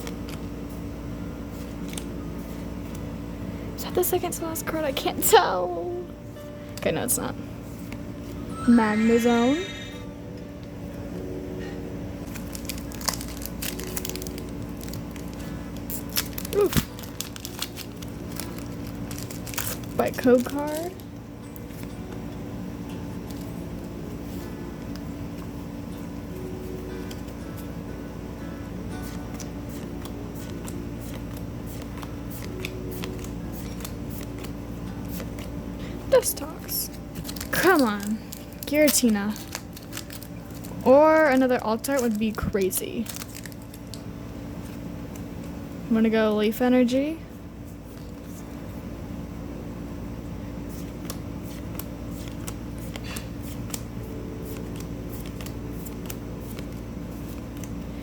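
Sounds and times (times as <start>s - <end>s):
steady low hum: 0.0s - 58.0s
trading cards clicking and rustling: 12.2s - 21.0s, 29.0s - 35.6s, 36.6s - 45.6s, 50.6s - 58.0s
trading cards clicking and sliding: 29.0s - 35.6s, 50.6s - 57.8s.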